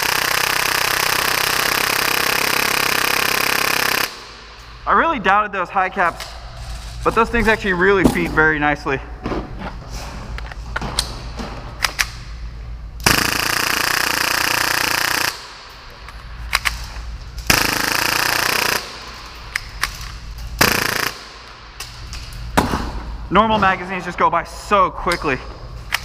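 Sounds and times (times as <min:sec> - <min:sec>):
airsoft pistol firing bursts: 0:00.0 - 0:04.3, 0:13.0 - 0:15.6, 0:17.5 - 0:19.1, 0:20.6 - 0:21.4.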